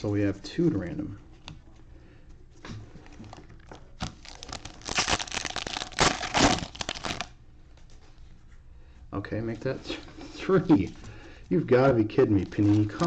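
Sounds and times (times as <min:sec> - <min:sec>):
plastic wrapper crinkling: 0:03.0 - 0:07.4
plastic wrapper tearing: 0:03.3 - 0:07.4.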